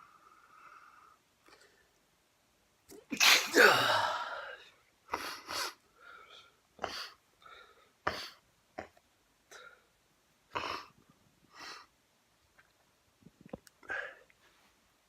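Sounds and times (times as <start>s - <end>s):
man sneezing: 3.1s - 4.5s.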